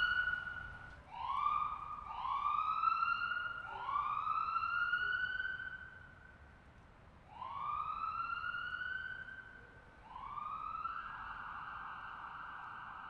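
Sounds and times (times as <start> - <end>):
ambulance siren wailing: 0.0 - 6.0, 7.3 - 13.0.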